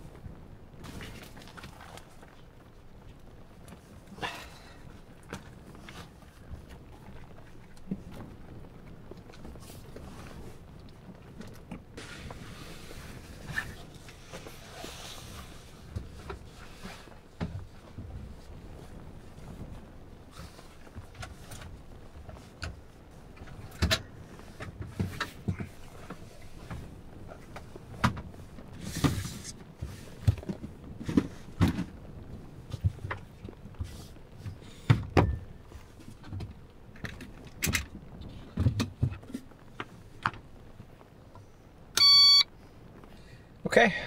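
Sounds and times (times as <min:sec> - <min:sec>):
hissy rustle: 0:00.0 - 0:44.0
short electronic beep: 0:42.0 - 0:42.5.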